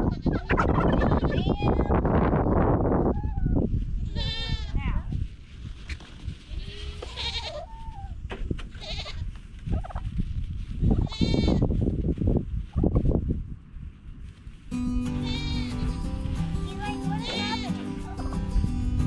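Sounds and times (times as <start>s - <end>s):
goats bleating: 14.8s - 18.5s.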